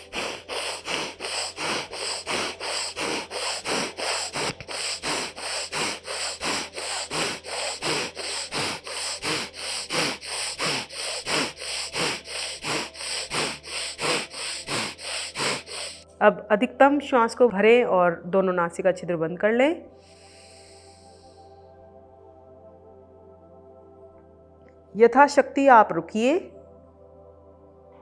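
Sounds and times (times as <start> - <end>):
woman breathing forcefully through nose: 0.0 - 16.1, 20.0 - 21.7.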